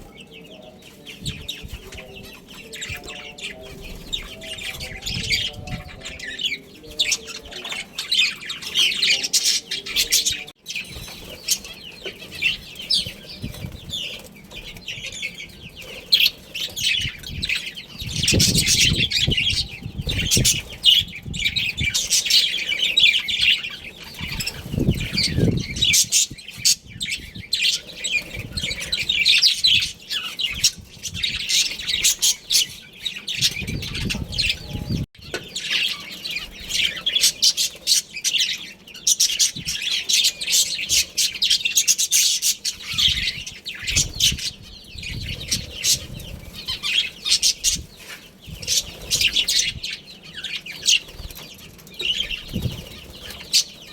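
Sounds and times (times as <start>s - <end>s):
budgerigars chirping: 0.0s - 53.9s.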